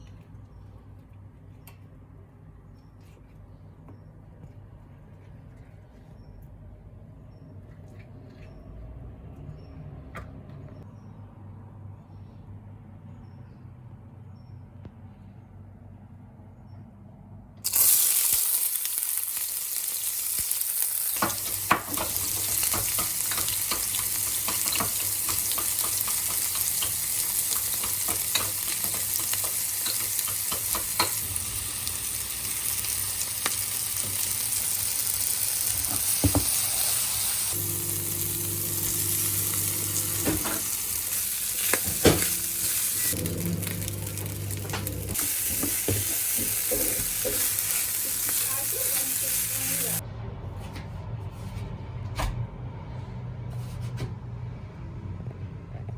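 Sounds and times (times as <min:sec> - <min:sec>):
fried rice sizzling in a pan: 0:17.6 - 0:50.0
utensil tapping and scraping pan: 0:21.2 - 0:31.2, 0:44.6 - 0:49.0.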